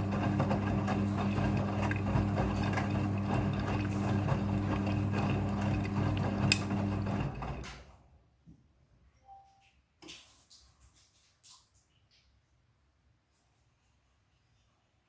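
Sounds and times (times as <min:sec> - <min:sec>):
washing machine motor hum: 0:00.0 - 0:08.0.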